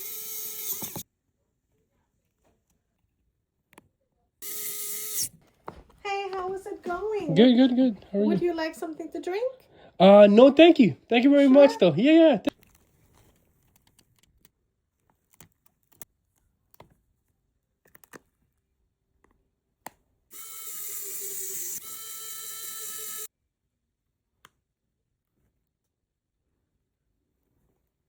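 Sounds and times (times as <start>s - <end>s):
small motorised tool whine: 0.0s - 1.0s, 4.4s - 5.4s, 20.3s - 23.3s.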